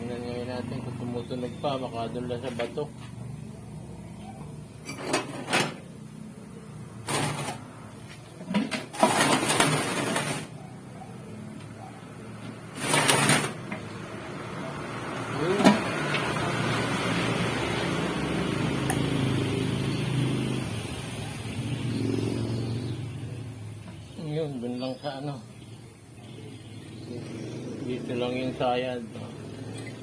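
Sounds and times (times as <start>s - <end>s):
water pump scraping whirrs: 7.0s - 7.7s, 8.6s - 10.6s, 12.6s - 21.2s.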